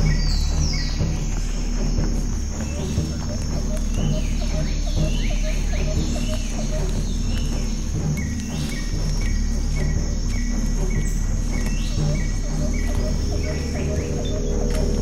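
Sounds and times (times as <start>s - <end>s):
shifting bass: 10.8s - 15.0s.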